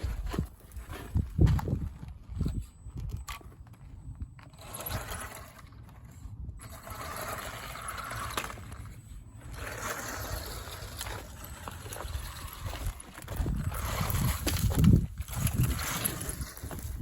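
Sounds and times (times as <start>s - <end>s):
toy car motor whirring: 4.5s - 17.0s.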